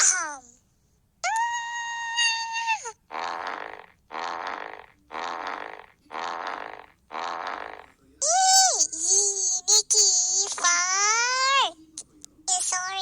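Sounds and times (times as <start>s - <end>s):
balloon neck squealing: 1.3s - 11.7s
raspy sputtering balloon blasts: 2.3s - 7.9s.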